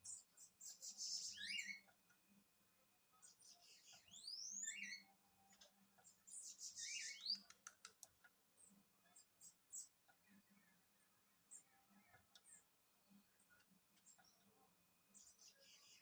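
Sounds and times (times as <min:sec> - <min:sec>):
bird singing buzzy phrases: 0:00.0 - 0:01.9, 0:03.2 - 0:05.2, 0:06.1 - 0:07.5
sharp bird ticks: 0:07.2 - 0:08.3.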